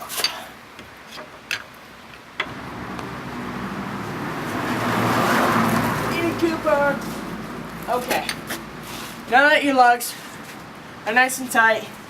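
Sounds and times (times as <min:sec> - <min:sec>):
car passing on road: 0:02.4 - 0:11.0.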